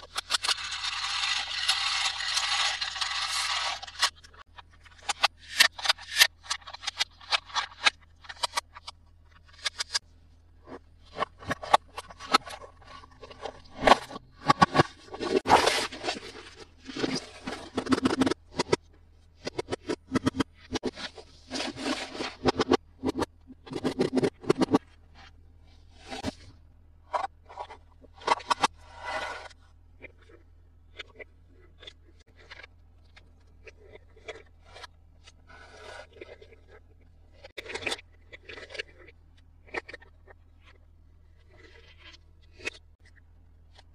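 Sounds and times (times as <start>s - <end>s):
plastic toys clicking and tapping: 0.0s - 10.0s, 17.4s - 18.8s.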